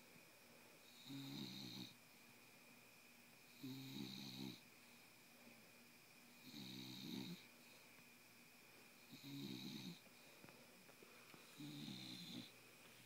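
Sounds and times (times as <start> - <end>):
dog snoring: 0.8 - 2.0, 3.5 - 4.6, 6.3 - 7.5, 9.0 - 10.0, 11.5 - 12.6.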